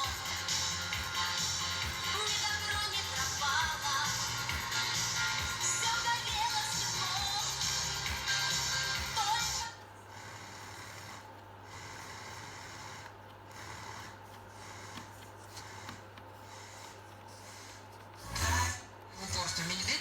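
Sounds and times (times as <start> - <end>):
car radio music: 0.0 - 9.8.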